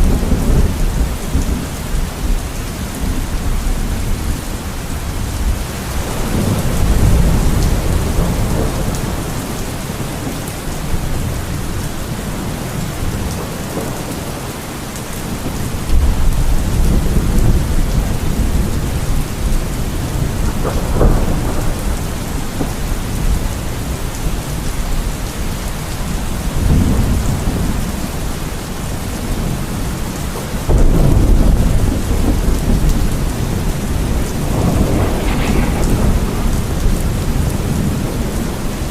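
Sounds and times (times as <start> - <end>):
thunder rumbling: 0.0 - 14.5, 15.2 - 28.0, 28.7 - 38.9
heavy rain: 0.0 - 38.9
sharp thunder clap: 19.8 - 23.4, 30.7 - 38.9.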